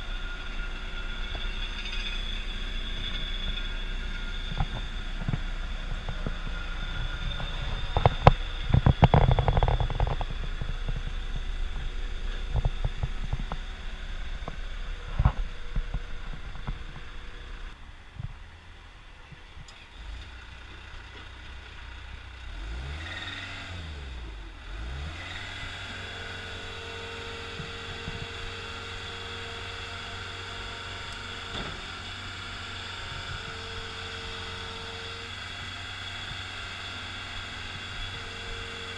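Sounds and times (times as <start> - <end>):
steady higher tone: 0.0 - 17.8
diesel engine running: 0.0 - 38.9
loud clanks and knocks: 0.4 - 17.3, 31.2 - 32.5.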